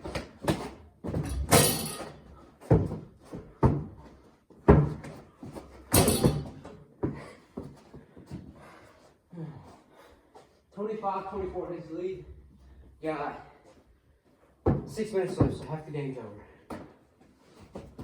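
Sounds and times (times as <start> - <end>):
basketball bouncing on hard floor: 0.0 - 4.1, 4.7 - 5.2, 5.9 - 7.2
loud bangs with rattle: 5.9 - 6.6.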